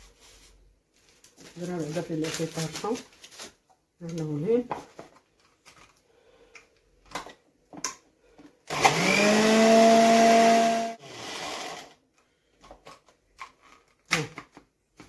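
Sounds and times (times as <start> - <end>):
electric grinder whine: 8.7 - 11.9.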